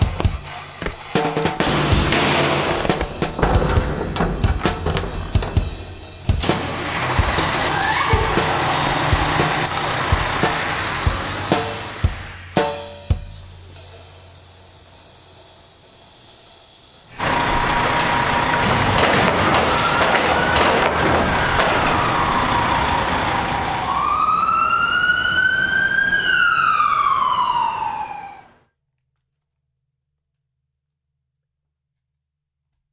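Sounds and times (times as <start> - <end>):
dense vehicle noise: 0.0 - 12.6, 17.1 - 28.6
sirens wailing: 17.2 - 28.6.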